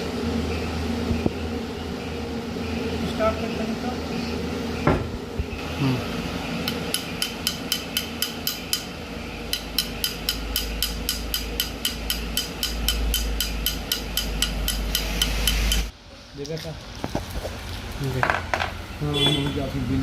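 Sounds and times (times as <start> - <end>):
fan motor hum: 0.0 - 20.0.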